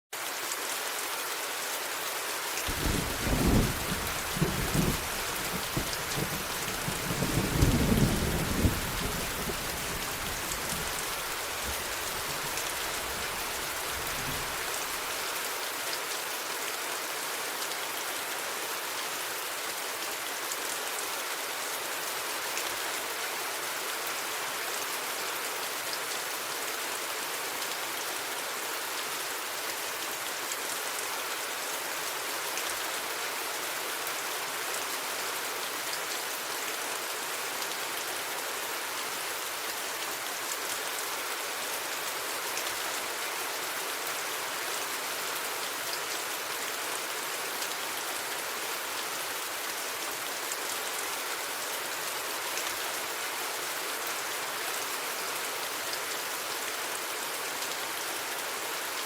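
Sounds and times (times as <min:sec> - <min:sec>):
steady rain falling: 0:00.1 - 0:59.0
thunder rumbling: 0:02.7 - 0:11.1.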